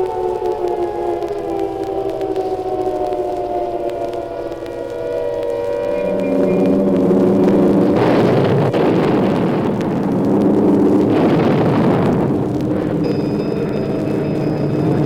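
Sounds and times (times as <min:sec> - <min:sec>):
droning tones: 0:00.0 - 0:15.0
heavy rushing rumble: 0:04.5 - 0:15.0.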